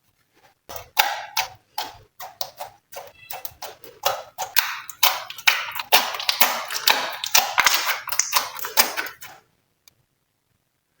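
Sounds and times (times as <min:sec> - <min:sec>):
slime squished by hand: 0:00.9 - 0:09.4.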